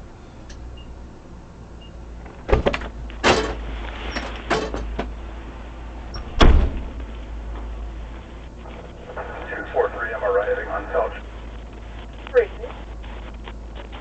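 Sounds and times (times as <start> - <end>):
vehicle low rumble: 0.0 - 14.0
car door clunks and knocks: 2.3 - 3.4, 6.2 - 7.0
car door shutting: 2.3 - 3.6, 6.1 - 7.0.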